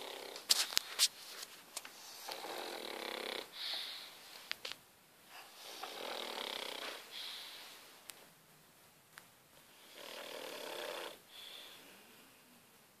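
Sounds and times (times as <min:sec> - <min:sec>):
dog snoring: 0:00.0 - 0:00.5, 0:02.1 - 0:03.6, 0:05.4 - 0:07.0, 0:09.8 - 0:11.2.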